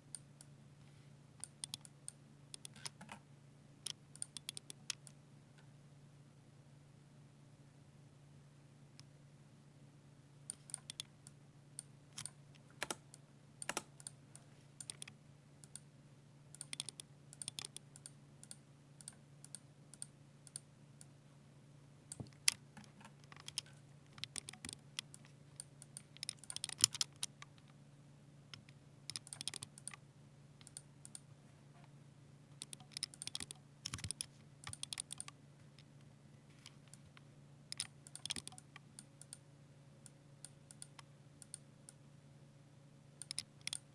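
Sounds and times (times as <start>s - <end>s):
faint low hum: 0.0s - 43.9s
typing on mechanical keyboard: 16.6s - 17.8s, 23.3s - 27.3s, 29.1s - 30.0s, 32.6s - 35.3s, 37.7s - 39.4s, 43.2s - 43.8s.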